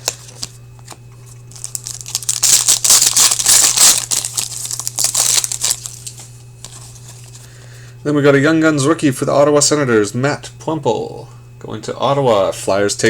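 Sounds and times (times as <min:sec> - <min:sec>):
foil wrapper tearing and crinkling: 0:01.5 - 0:07.4.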